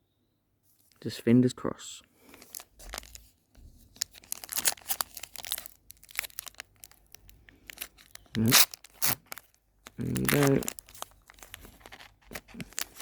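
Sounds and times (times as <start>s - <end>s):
foil wrapper tearing and crinkling: 2.4s - 3.3s, 3.9s - 13.0s.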